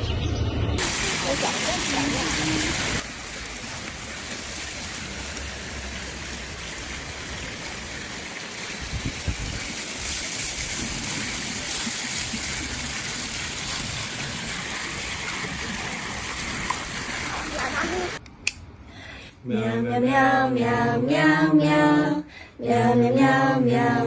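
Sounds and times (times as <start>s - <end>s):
water running: 0.8s - 18.2s.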